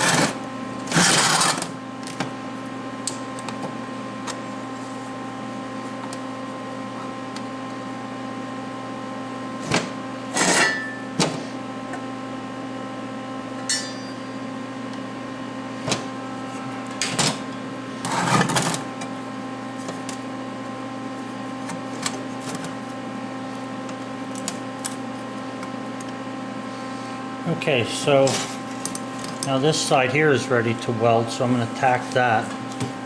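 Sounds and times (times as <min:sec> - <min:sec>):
electrical hum: 0:00.0 - 0:33.0.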